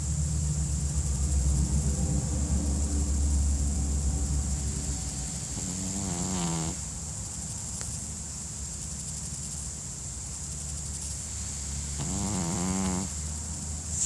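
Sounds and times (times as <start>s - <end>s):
dog breathing: 3.7s - 7.4s, 10.8s - 14.0s
dog snoring: 3.9s - 7.2s, 10.8s - 14.0s.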